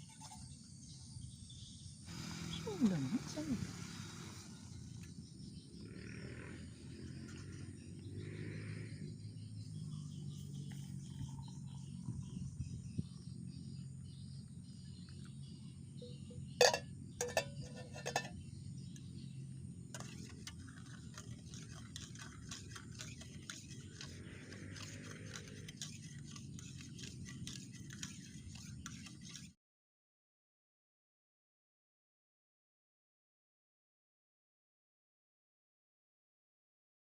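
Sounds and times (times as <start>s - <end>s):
insects buzzing: 2.1s - 26.0s.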